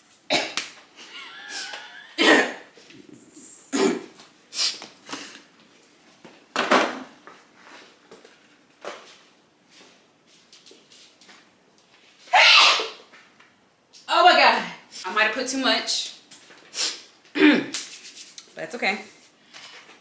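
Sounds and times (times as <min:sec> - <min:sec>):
person coughing: 0:01.4 - 0:02.6, 0:03.7 - 0:04.1, 0:17.4 - 0:17.7.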